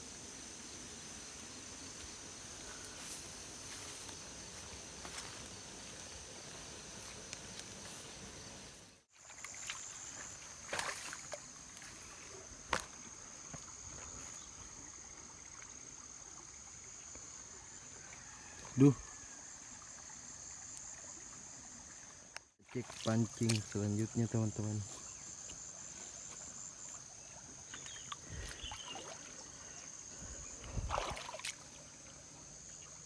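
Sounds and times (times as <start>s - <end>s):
insect drone: 0.0s - 33.0s
sharp knocks or splashes: 9.4s - 11.4s, 30.7s - 31.6s.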